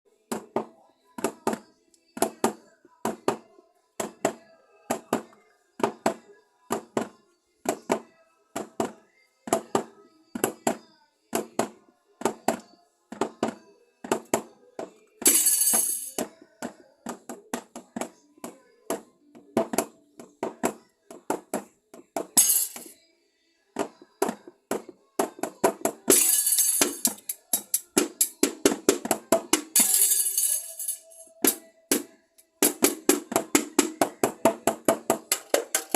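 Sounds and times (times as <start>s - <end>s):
drum kit beat: 25.6s - 35.9s.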